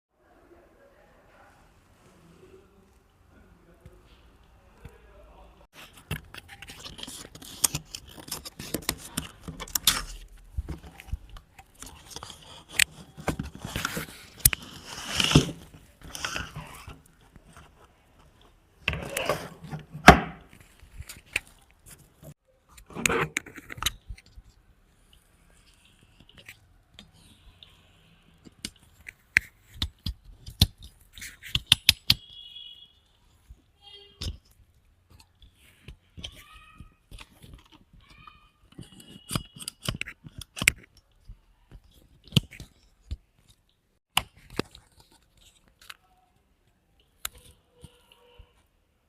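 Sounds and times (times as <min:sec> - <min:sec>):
plastic packaging clicks and crinkles: 0:05.8 - 0:18.5, 0:34.2 - 0:48.4.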